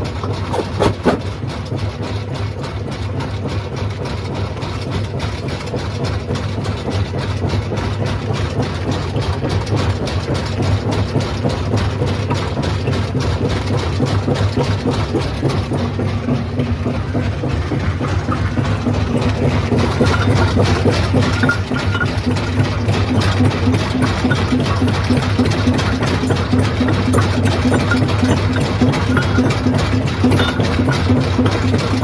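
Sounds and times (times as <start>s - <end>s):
stone crusher drone: 14.9s - 32.0s.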